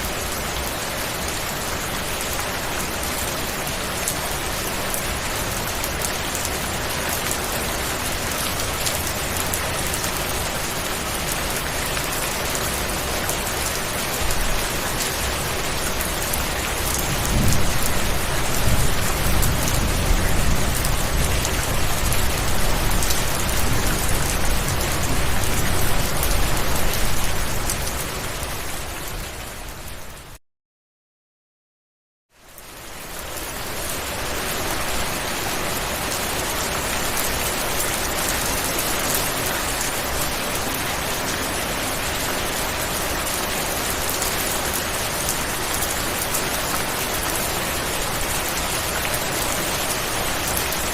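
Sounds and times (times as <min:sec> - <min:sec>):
heavy rain: 0:00.0 - 0:30.4, 0:32.3 - 0:50.9
deep thunder rumble: 0:17.1 - 0:17.9.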